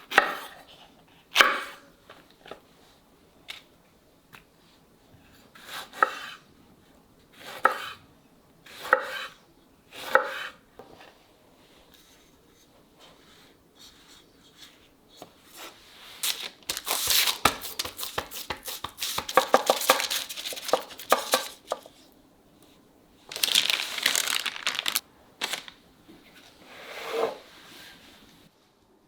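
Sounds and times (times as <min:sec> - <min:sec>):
baking paper crinkling: 0:16.2 - 0:21.8, 0:23.3 - 0:25.8.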